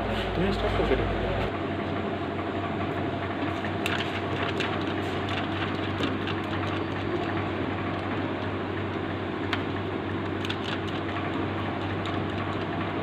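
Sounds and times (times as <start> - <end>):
mechanical running noise: 2.7 - 13.0.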